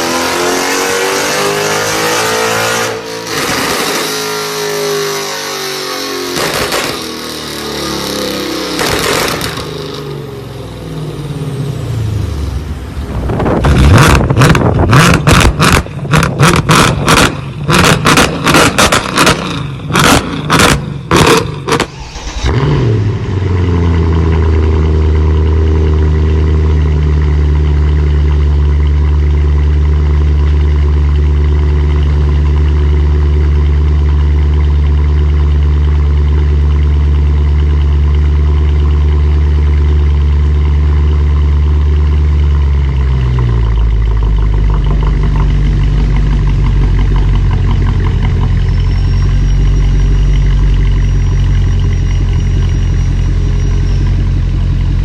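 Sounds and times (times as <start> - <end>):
car engine revs falling: 0.0 - 10.0, 13.0 - 24.8
exhaust pops and crackles: 6.4 - 7.2, 8.8 - 9.7, 13.4 - 21.9, 42.6 - 49.1
car engine idling: 19.1 - 55.0.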